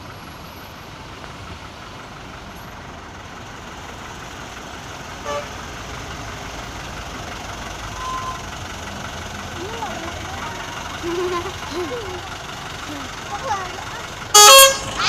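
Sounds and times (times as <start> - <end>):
traffic passing: 0.0 - 15.0
vehicle horn toot: 5.2 - 5.6, 7.9 - 8.4, 14.3 - 15.0.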